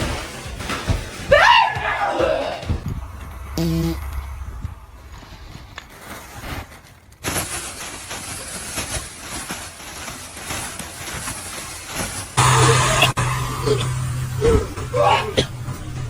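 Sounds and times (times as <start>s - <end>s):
loud sound with low hum: 1.8s - 6.8s, 12.4s - 16.0s.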